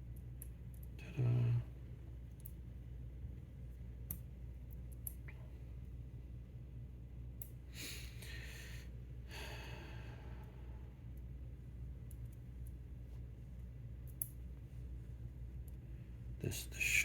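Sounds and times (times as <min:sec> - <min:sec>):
steady low hum: 0:00.0 - 0:17.0
faint small clicks: 0:02.3 - 0:02.6, 0:04.0 - 0:05.4, 0:07.4 - 0:07.6, 0:12.0 - 0:12.8, 0:14.0 - 0:14.4
breaths or sighs: 0:07.8 - 0:10.6.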